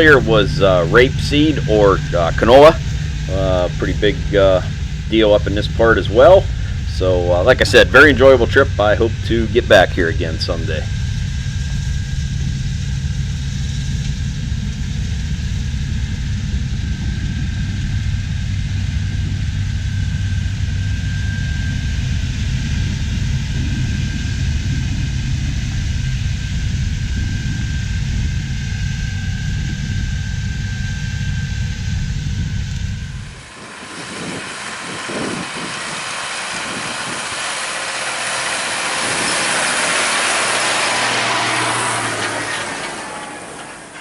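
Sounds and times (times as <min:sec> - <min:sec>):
combine harvester engine rumble: 0:00.0 - 0:44.0
faint high whine: 0:00.0 - 0:44.0.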